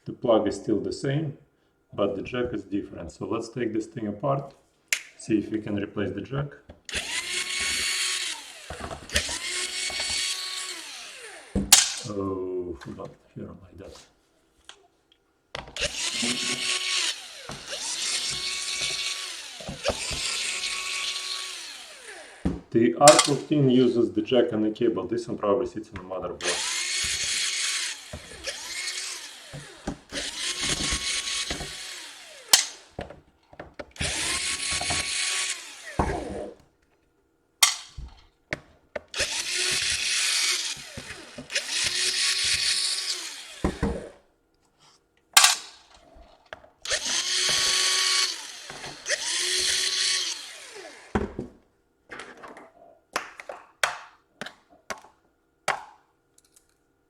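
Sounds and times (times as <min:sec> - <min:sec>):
electric screwdriver whirring: 0:06.9 - 0:12.1, 0:15.8 - 0:22.6, 0:26.4 - 0:33.0, 0:34.0 - 0:36.5, 0:39.1 - 0:44.2, 0:46.8 - 0:51.3.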